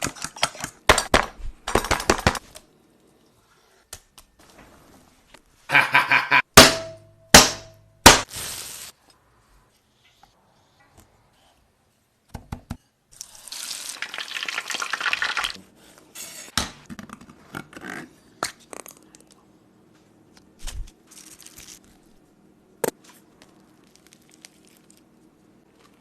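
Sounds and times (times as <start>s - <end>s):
frying crackling: 8.1s - 9.0s, 13.2s - 15.6s.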